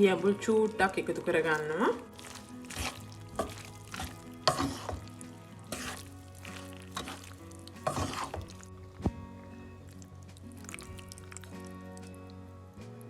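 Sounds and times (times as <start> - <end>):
faint background music: 0.0 - 13.0
spoon scraping in a pan: 2.1 - 8.7.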